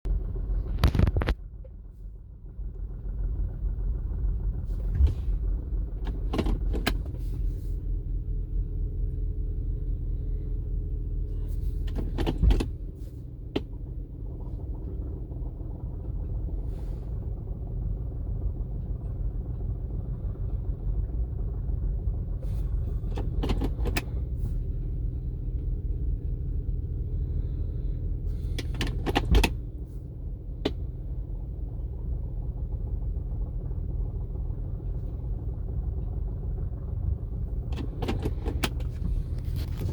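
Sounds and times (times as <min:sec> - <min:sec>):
car engine idling: 0:00.1 - 0:39.9
short clicks and clunks: 0:06.0 - 0:07.2, 0:11.9 - 0:12.8, 0:23.1 - 0:24.1, 0:28.5 - 0:29.6, 0:37.7 - 0:39.9.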